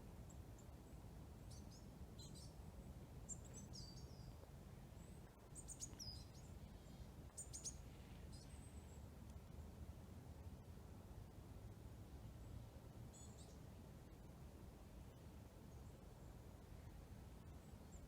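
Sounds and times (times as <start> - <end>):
small birds chirping: 0.3 - 2.6, 3.2 - 9.1, 13.1 - 13.7.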